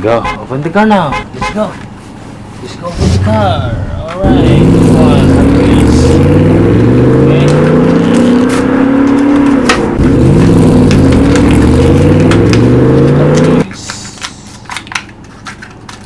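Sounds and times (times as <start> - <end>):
car engine revving: 2.9 - 13.7.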